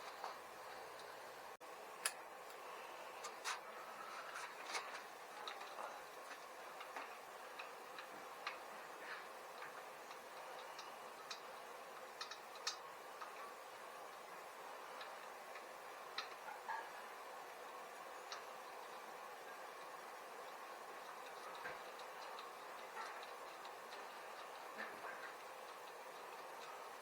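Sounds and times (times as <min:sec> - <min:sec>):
faint steady hiss: 0:00.0 - 0:27.0
small parts clicking and tapping: 0:04.4 - 0:14.3, 0:14.9 - 0:16.5, 0:19.8 - 0:26.9.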